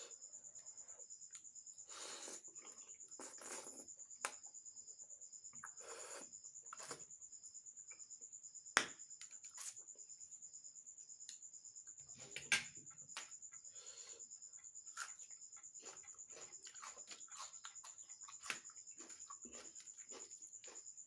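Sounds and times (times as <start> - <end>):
cricket trilling: 0.0 - 21.0
person eating noodles: 1.9 - 3.9, 5.6 - 7.0, 15.0 - 20.8.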